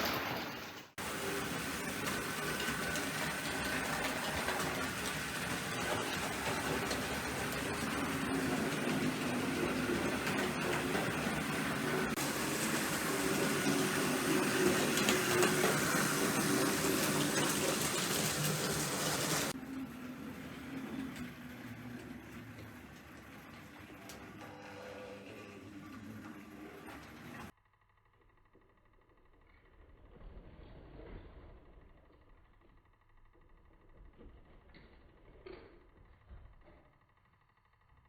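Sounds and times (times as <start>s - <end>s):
model train motor whirring: 1.0s - 29.4s.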